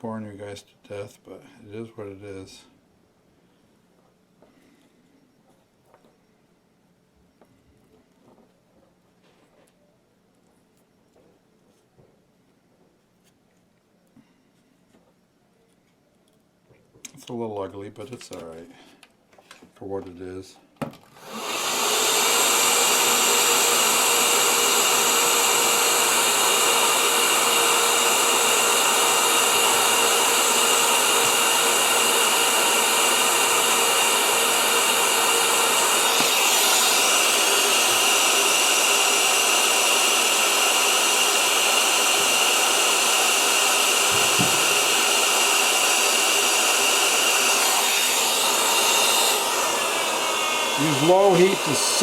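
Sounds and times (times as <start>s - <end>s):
heat gun blowing with motor whine: 21.2s - 52.0s.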